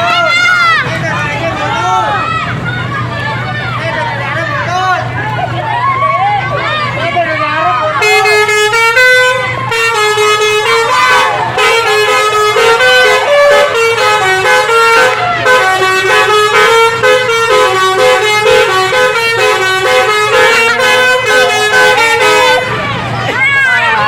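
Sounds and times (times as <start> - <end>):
musical air horn melody: 8.0 - 23.0.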